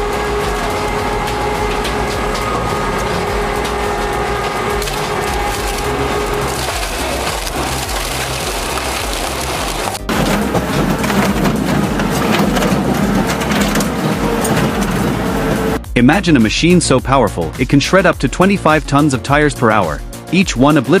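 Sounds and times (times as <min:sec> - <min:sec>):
shredder crunching wood: 0:00.0 - 0:15.8
machine whine: 0:00.0 - 0:16.0.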